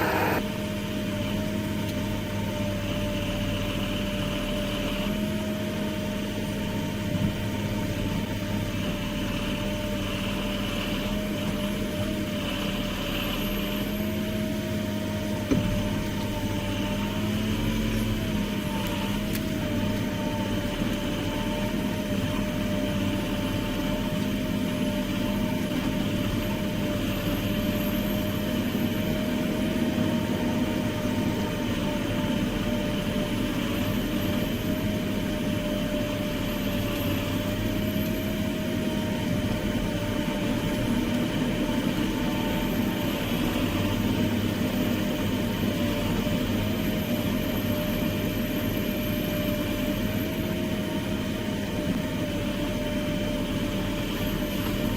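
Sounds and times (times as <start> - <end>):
steady whine: 0.0 - 0.8
heavy machine engine running: 0.0 - 54.9.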